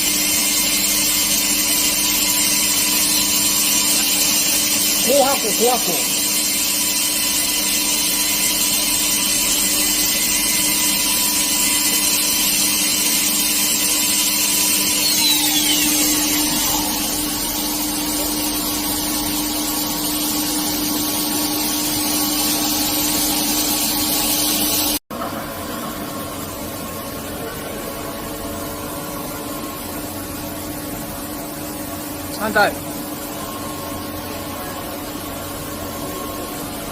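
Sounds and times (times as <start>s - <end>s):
mill spindle whining: 0.0s - 25.0s
higher whine falling in pitch: 14.6s - 19.7s.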